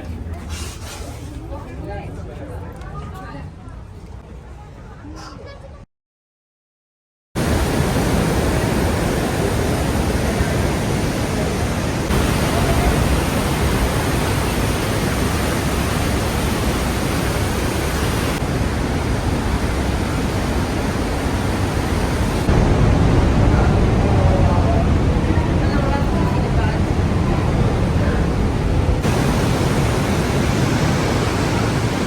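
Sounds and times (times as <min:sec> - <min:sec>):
loud steady rushing noise: 0:07.4 - 0:32.0.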